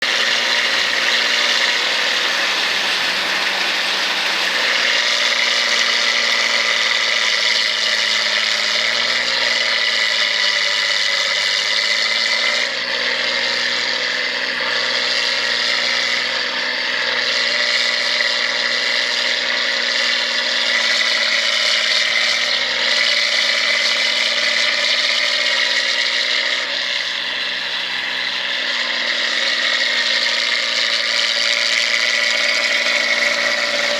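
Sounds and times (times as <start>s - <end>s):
high machine whine: 0.0s - 11.8s, 22.1s - 33.9s
combine harvester engine droning: 0.0s - 33.9s.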